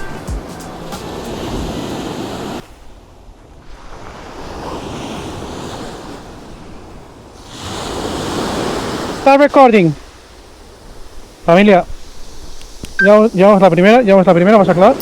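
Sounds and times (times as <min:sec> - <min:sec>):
waves washing on shore: 0:00.7 - 0:15.0.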